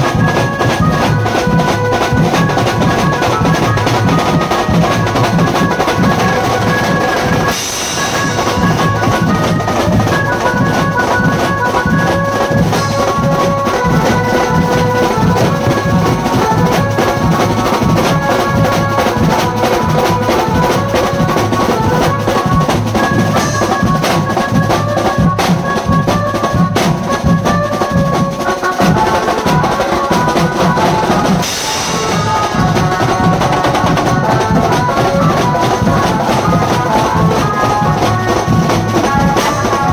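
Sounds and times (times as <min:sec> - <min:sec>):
drum-heavy band music: 0:00.0 - 0:39.9
cymbal crash: 0:31.4 - 0:34.0.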